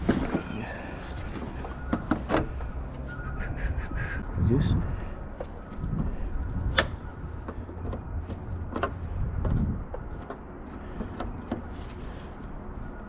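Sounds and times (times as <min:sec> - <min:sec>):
steady low rumble: 0:02.5 - 0:13.0
tools and car parts clicking: 0:06.7 - 0:12.4.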